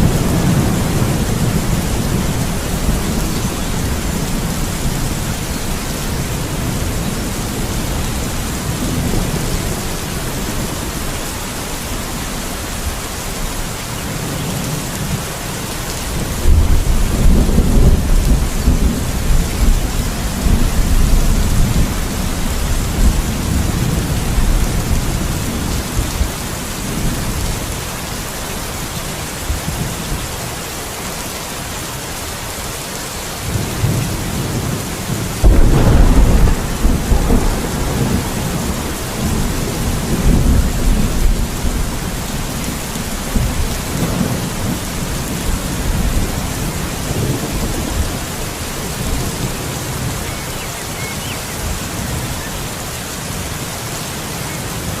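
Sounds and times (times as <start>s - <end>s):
thunder rumbling: 0.0s - 12.1s, 16.1s - 27.8s, 33.5s - 50.2s
steady rain: 0.0s - 55.0s.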